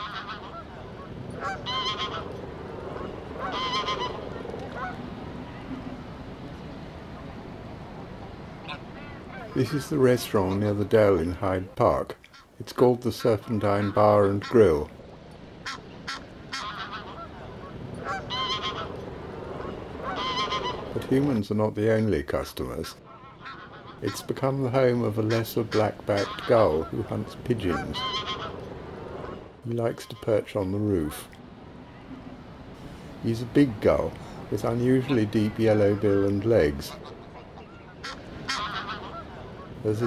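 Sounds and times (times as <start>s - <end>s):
large waterbird honking: 0.0s - 5.7s, 8.6s - 10.8s, 13.1s - 14.8s, 15.6s - 21.0s, 23.0s - 24.4s, 25.2s - 30.4s, 33.9s - 40.0s
outdoor background noise: 0.0s - 40.0s.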